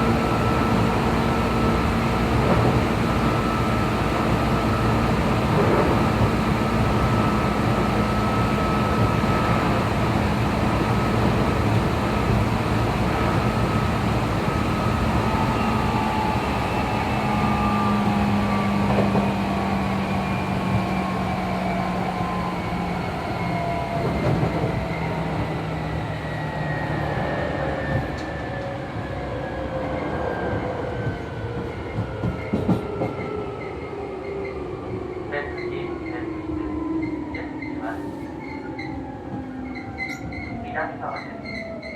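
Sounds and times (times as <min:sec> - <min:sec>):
train traction motor whine: 0:00.0 - 0:28.7
train running gear rumble: 0:00.0 - 0:34.4.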